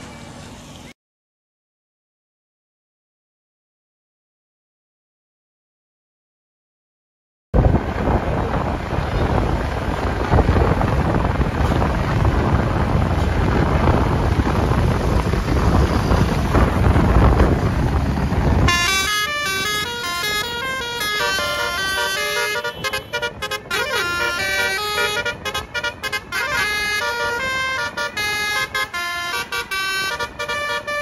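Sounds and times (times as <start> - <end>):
vehicle and road rumble: 0.0 - 1.0, 7.6 - 31.0
multi-note bus horn tune: 18.7 - 31.0.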